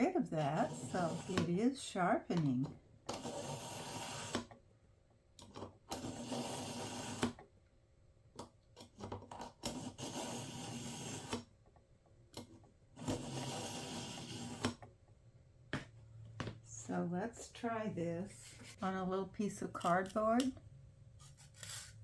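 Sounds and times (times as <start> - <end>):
knife grating through sharpener: 0.4 - 1.5, 3.1 - 4.4, 5.9 - 7.2, 9.6 - 11.4, 13.0 - 14.7.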